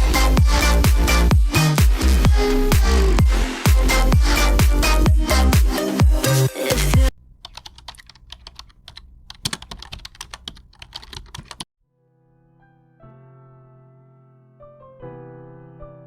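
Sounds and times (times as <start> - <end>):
dance music: 0.0 - 7.1
soft piano music: 12.4 - 16.0.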